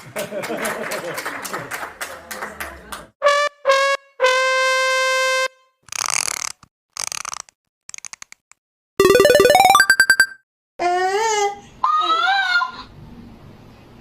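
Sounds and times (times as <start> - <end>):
comic brass fail sound effect: 9.0 - 10.3.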